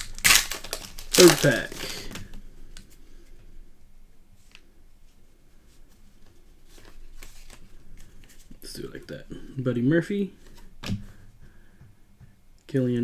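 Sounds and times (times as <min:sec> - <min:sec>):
trading cards rustling: 0:00.0 - 0:02.1.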